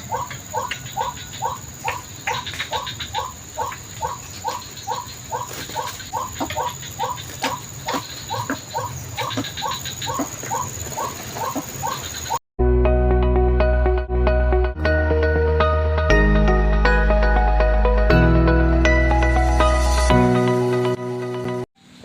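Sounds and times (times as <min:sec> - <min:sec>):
waterhen calls: 0:00.0 - 0:12.4.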